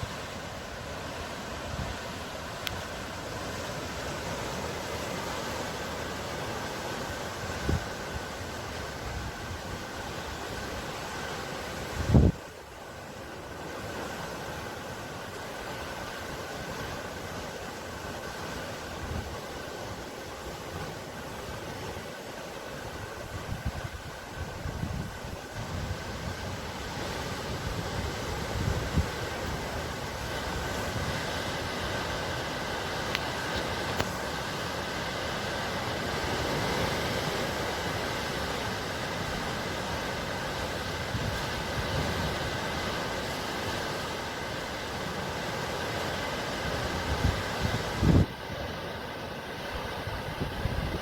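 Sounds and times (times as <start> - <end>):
sea surf washing: 0.0 - 51.0
wind buffeting microphone: 11.9 - 12.5, 23.0 - 32.2, 46.8 - 48.4, 49.8 - 51.0.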